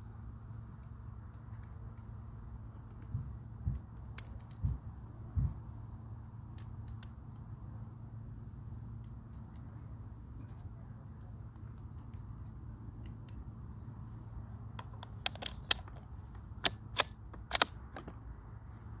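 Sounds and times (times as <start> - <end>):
steady low hum: 0.0 - 19.0
rifle cracks and clicks: 14.8 - 18.1.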